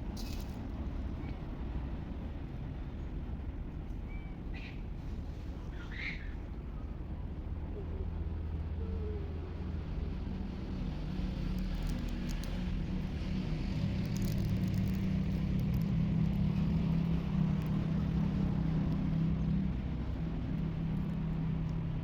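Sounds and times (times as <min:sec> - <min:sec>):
low engine hum: 0:00.0 - 0:22.0.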